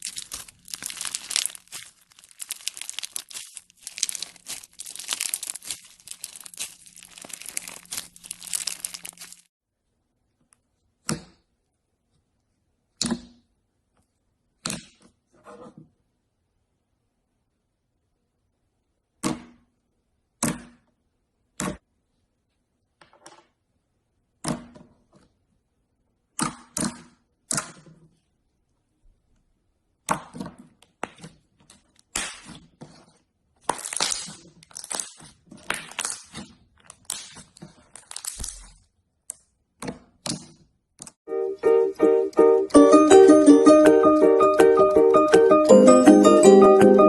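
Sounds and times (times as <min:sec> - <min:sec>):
slime popping and crackling: 0:00.0 - 0:09.5, 0:33.6 - 0:38.8.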